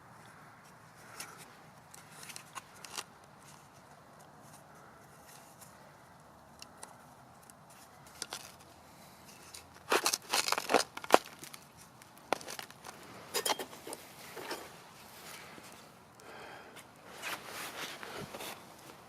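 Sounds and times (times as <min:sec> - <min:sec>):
crinkling and tearing material: 0:09.4 - 0:13.1.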